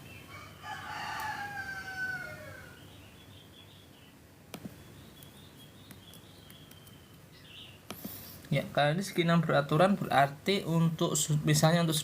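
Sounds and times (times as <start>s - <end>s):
rooster crowing: 0.3s - 2.8s.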